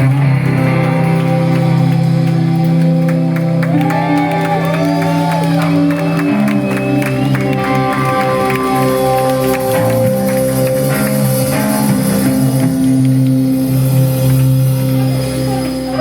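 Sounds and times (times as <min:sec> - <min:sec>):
live rock band playing: 0:00.0 - 0:16.0
ringing electric guitar notes: 0:00.0 - 0:16.0
audience shouting: 0:03.6 - 0:10.5.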